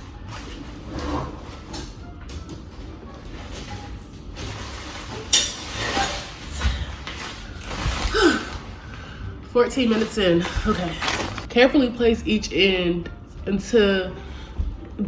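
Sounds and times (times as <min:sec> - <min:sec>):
nylon fabric rustling: 0:02.8 - 0:08.8, 0:09.8 - 0:11.5.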